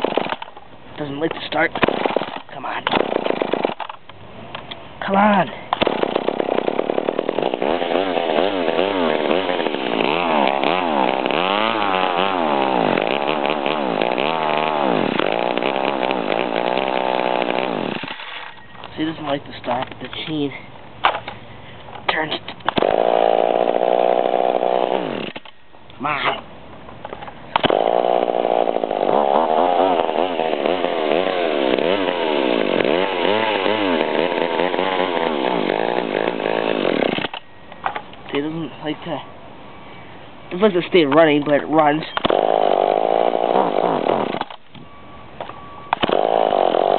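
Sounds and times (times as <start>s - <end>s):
chainsaw engine revving: 0.0s - 0.5s, 1.3s - 4.1s, 5.0s - 20.4s, 22.1s - 25.5s, 27.5s - 37.4s, 40.6s - 44.6s, 45.9s - 46.9s.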